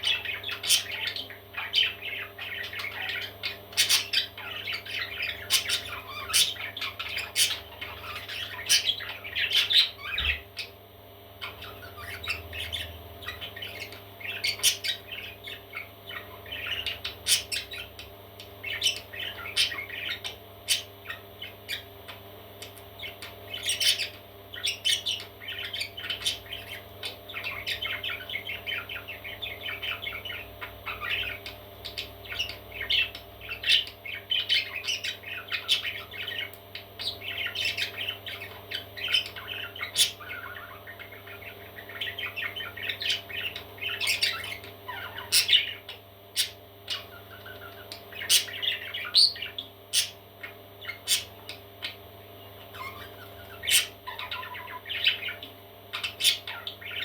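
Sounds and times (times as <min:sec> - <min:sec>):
parrot chicks chirping and squawking: 0:00.0 - 0:57.0.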